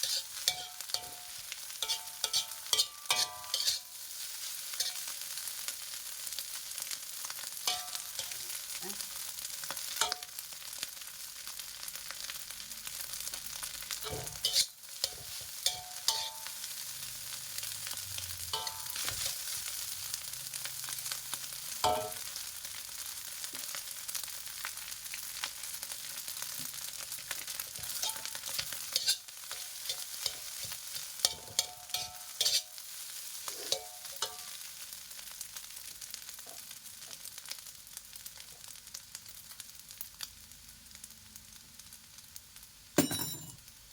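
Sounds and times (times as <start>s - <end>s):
spatula scraping and clinking on pan: 0.0s - 5.2s, 7.6s - 8.5s, 9.9s - 10.4s, 13.9s - 16.7s, 18.5s - 19.7s, 21.8s - 22.3s, 27.7s - 32.8s, 33.4s - 34.6s
rice sizzling in a hot pan: 0.0s - 43.0s, 43.6s - 43.9s.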